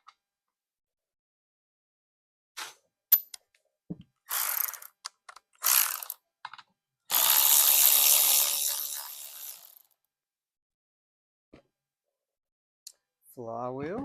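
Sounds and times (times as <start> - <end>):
power tool ratcheting bursts: 4.3 - 5.0, 5.6 - 6.2, 7.1 - 9.9.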